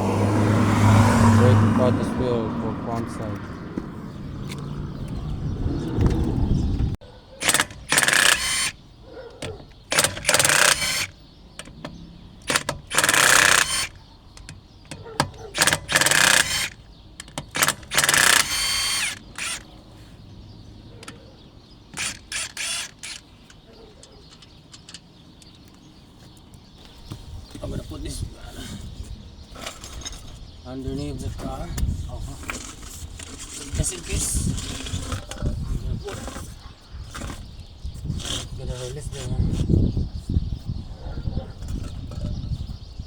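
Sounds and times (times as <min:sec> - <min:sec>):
low rumble: 0:00.0 - 0:07.0
ratchet wrench clicking: 0:07.4 - 0:08.8, 0:09.9 - 0:11.8, 0:12.4 - 0:14.6, 0:15.5 - 0:19.7, 0:22.0 - 0:25.0.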